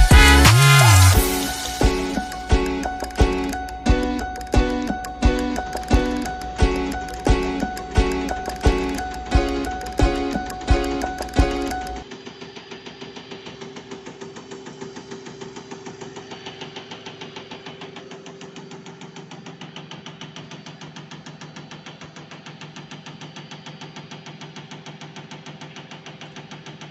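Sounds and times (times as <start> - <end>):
injector ticking: 0.0 - 12.0
music: 0.0 - 12.0.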